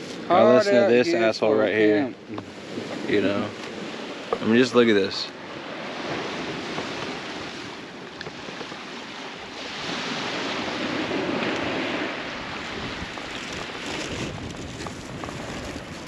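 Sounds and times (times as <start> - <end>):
ocean surf on rocky shore: 0.0 - 16.0
wind buffeting microphone: 0.0 - 16.0.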